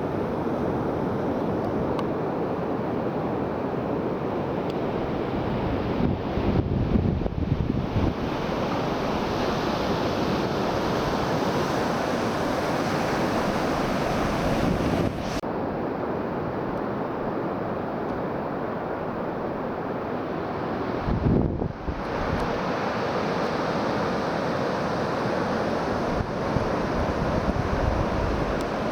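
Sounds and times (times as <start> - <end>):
sea surf rushing: 0.0 - 15.4, 16.2 - 28.9
wind buffeting microphone: 5.0 - 15.4, 21.0 - 22.6, 25.9 - 28.9.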